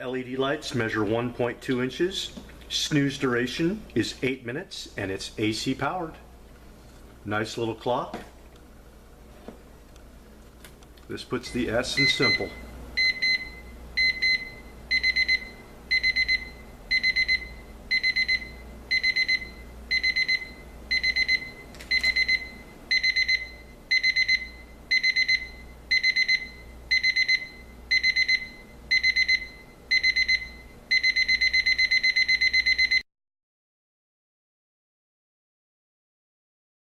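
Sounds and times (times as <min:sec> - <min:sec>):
alarm clock beeping: 0:12.0 - 0:33.0.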